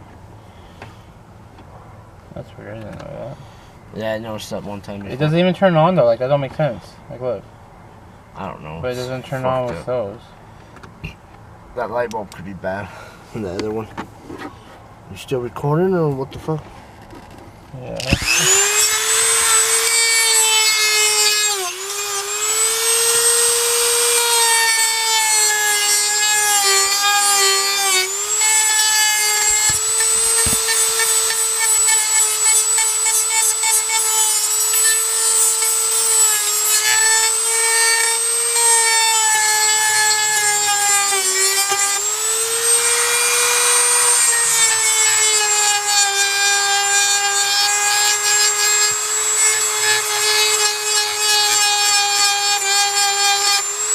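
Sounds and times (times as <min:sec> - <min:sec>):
high-speed power tool whining: 0:18.0 - 0:53.9.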